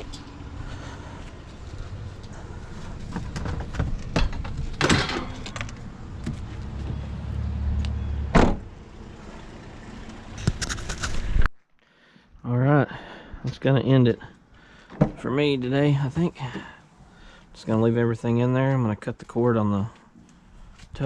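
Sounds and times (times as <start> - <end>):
low engine rumble: 0.0 - 11.5
clunks of scrap being loaded: 3.1 - 5.6
vehicle door shutting: 8.3 - 8.7.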